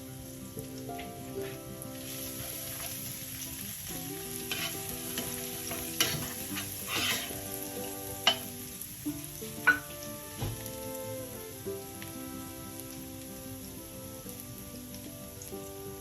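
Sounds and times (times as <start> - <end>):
food sizzling in a frying pan: 0.0 - 16.0
utensil clinking and scraping pan: 4.5 - 8.5.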